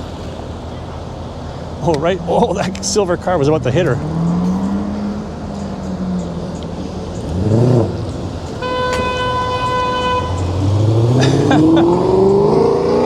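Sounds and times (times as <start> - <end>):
street traffic: 0.0 - 13.0
car horn held note: 8.5 - 11.2.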